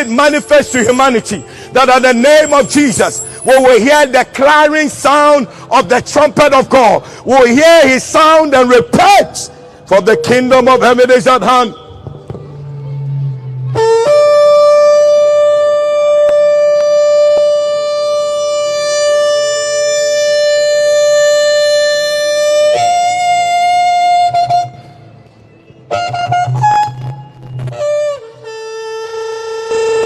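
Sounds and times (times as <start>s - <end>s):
shofar blowing: 0.0s - 4.2s, 9.9s - 12.0s, 12.6s - 24.8s, 26.1s - 30.0s.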